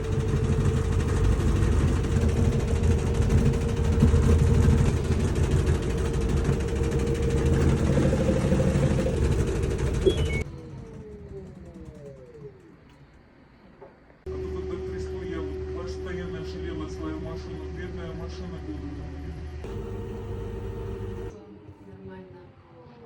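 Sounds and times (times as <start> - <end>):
washing machine rumbling: 0.0 - 12.6, 19.6 - 21.3.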